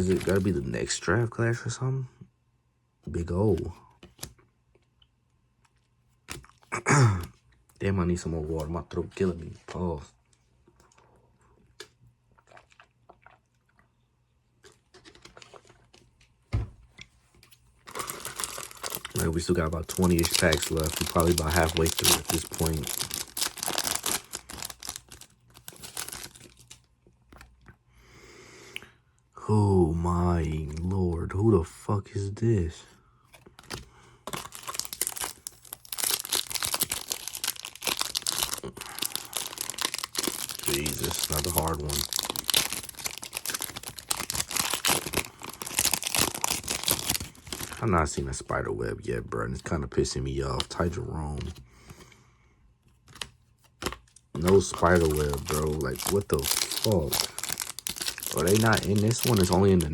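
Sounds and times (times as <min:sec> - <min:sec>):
plastic wrapper tearing and crinkling: 0:00.0 - 0:00.6, 0:17.9 - 0:26.9, 0:33.6 - 0:48.0, 0:53.1 - 0:59.9.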